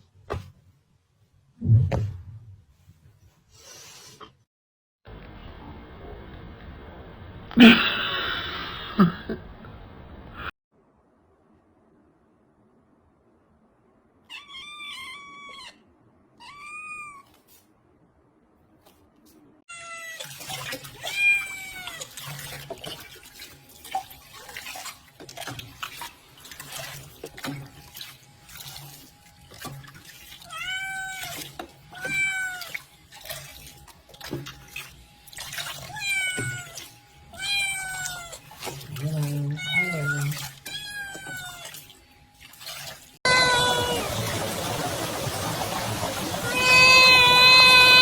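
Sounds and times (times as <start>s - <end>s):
cat meowing: 14.3s - 15.8s, 16.4s - 17.4s, 19.7s - 20.3s, 21.0s - 22.0s, 30.5s - 31.4s, 32.0s - 32.8s, 35.9s - 36.8s, 37.4s - 38.4s, 39.5s - 41.8s, 43.3s - 44.1s, 46.4s - 48.0s
water running from tap: 20.2s - 37.0s, 37.9s - 48.0s.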